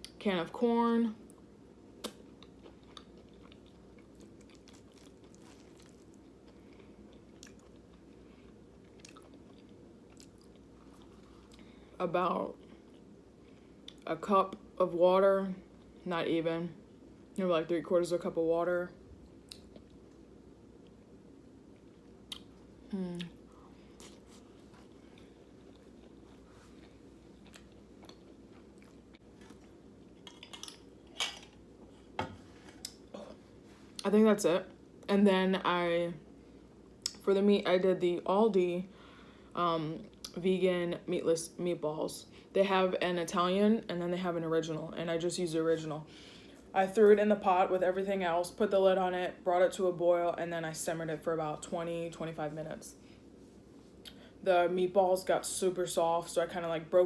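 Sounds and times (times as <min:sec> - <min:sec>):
chewing food: 0:02.0 - 0:11.6, 0:24.0 - 0:30.9.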